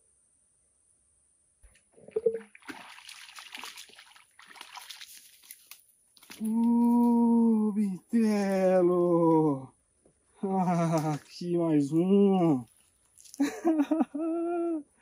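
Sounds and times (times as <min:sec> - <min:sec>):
water splashing and sloshing: 0:02.0 - 0:07.0.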